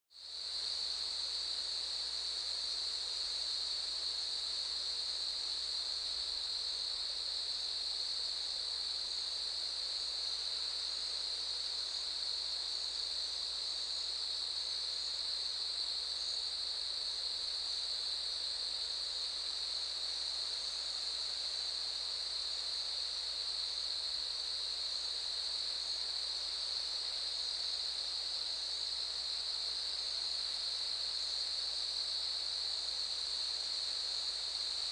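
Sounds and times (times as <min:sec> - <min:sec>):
cicadas buzzing: 0:09.0 - 0:34.9.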